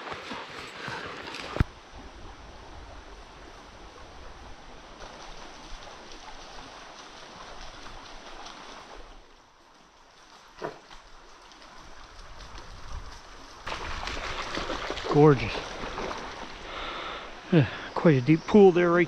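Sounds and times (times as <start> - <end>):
brook water rushing over rocks: 3.9 - 19.0.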